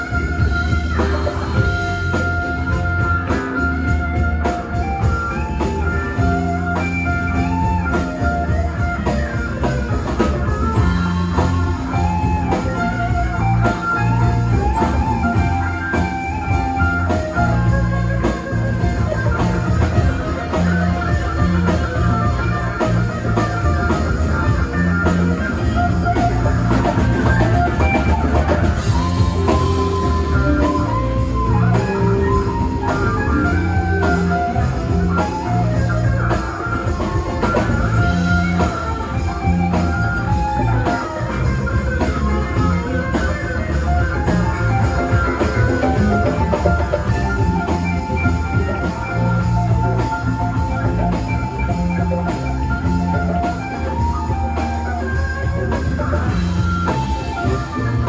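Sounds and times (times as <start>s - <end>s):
electric guitar lead notes: 0.0s - 58.0s
live rock band playing: 0.0s - 58.0s.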